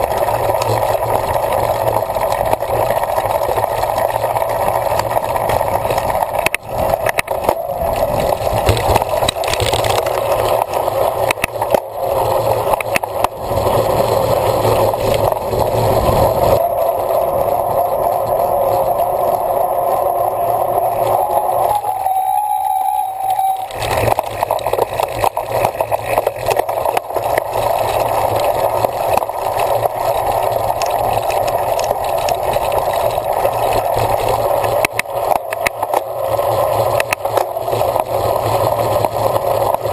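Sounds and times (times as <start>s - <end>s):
bicycle rattling over rough ground: 0.0s - 17.7s, 23.2s - 39.9s
wind on microphone: 4.4s - 10.7s, 11.4s - 25.1s.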